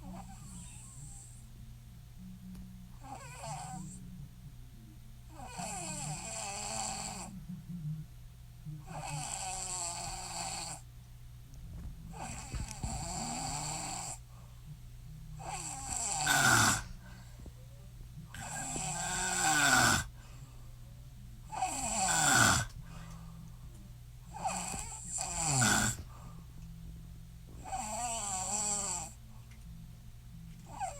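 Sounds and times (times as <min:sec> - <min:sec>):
woman snoring: 0:00.0 - 0:01.4, 0:03.0 - 0:04.0, 0:05.3 - 0:07.4, 0:08.8 - 0:10.8, 0:12.1 - 0:14.2, 0:15.4 - 0:17.1, 0:18.3 - 0:20.2, 0:21.5 - 0:23.1, 0:24.3 - 0:26.2, 0:27.6 - 0:29.2, 0:30.7 - 0:30.9.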